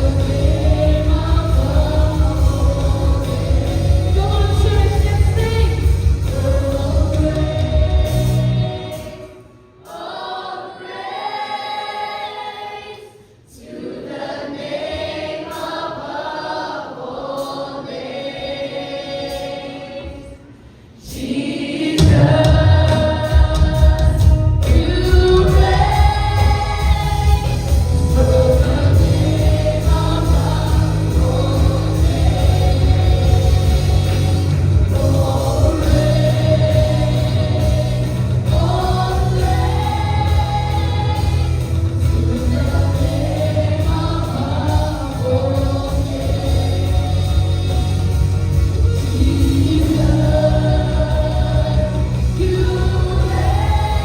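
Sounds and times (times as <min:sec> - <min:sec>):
live band playing: 0:00.0 - 0:09.8, 0:22.0 - 0:54.0
group singing worship song: 0:00.0 - 0:54.0.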